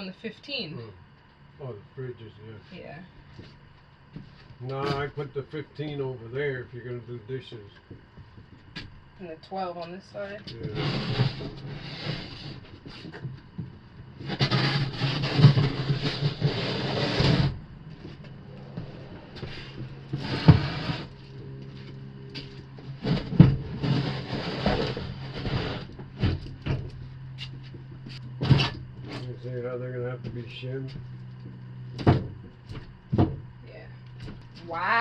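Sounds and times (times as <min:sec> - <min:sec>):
wooden boxes scraping on floor: 0:10.6 - 0:13.3, 0:14.2 - 0:26.4.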